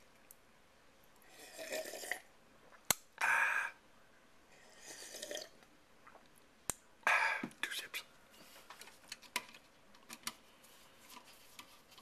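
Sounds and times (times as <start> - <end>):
man sipping coffee: 4.6 - 6.3.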